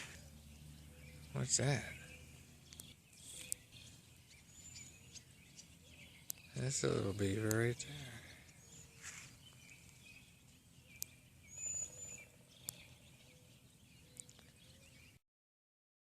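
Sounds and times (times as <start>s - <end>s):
faint bird chirps: 0.0s - 15.2s
faint clicks: 2.7s - 3.6s, 6.2s - 6.5s, 14.1s - 14.5s
high bird whistle: 11.5s - 12.3s.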